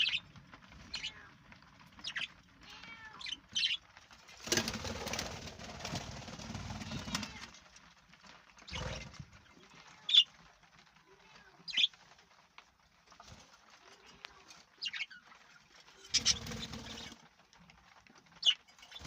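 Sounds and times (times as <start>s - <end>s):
parrots chirping: 0.0s - 3.9s, 14.7s - 17.2s
wings flapping: 0.0s - 19.0s.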